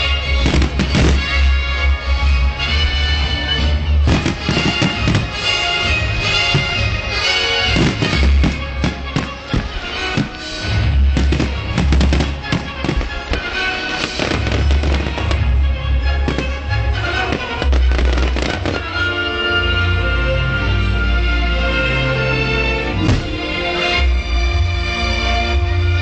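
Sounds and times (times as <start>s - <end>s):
fireworks bangs and crackles: 0.0s - 19.1s, 23.0s - 23.6s
loud music: 0.0s - 26.0s.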